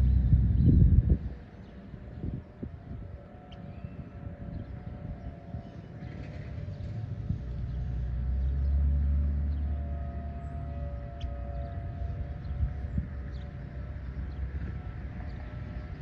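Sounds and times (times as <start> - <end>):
low rumble: 0.0 - 1.3
distant warning siren: 0.0 - 16.0.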